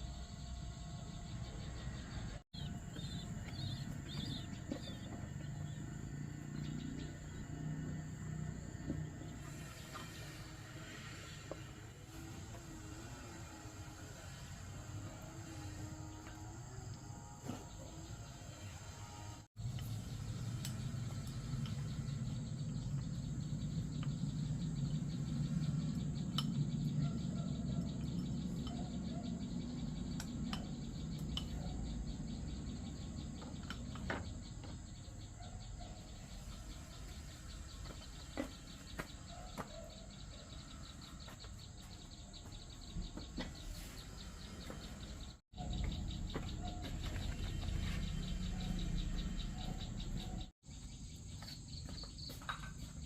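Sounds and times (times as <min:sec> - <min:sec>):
bird calls: 0:20.4 - 0:52.8.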